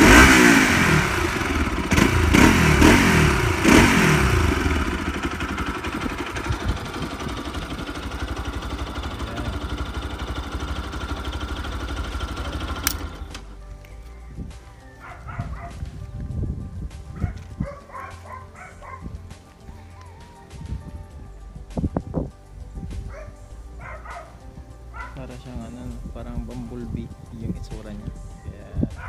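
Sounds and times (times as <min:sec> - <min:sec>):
motorcycle engine revving and idling: 0:00.0 - 0:13.8
sharp click: 0:12.8 - 0:14.1.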